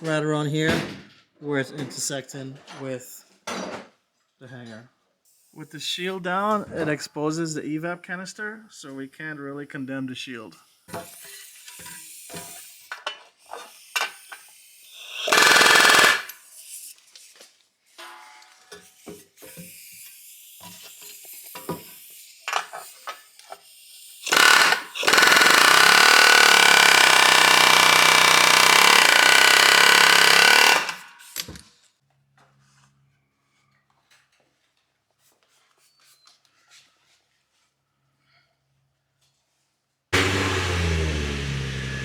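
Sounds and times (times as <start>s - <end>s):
power tool running: 14.8s - 16.4s, 24.2s - 31.4s, 40.2s - 42.0s.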